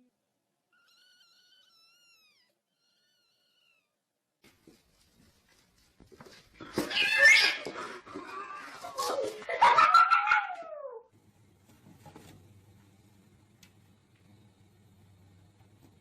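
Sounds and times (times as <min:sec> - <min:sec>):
cat yowling: 0:09.6 - 0:11.1.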